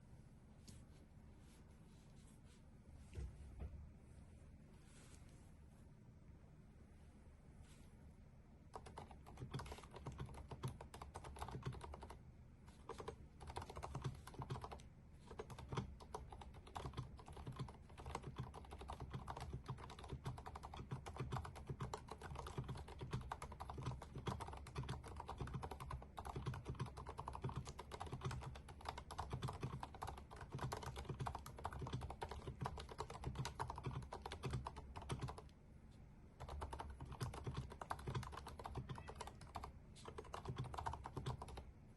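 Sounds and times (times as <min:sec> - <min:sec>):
mechanical keyboard typing: 0:08.7 - 0:12.2, 0:12.8 - 0:35.4, 0:36.4 - 0:41.6.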